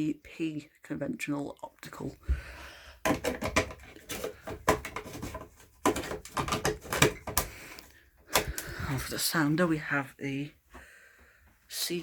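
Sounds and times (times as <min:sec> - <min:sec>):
sharp knocks and clicks: 0:03.0 - 0:07.5.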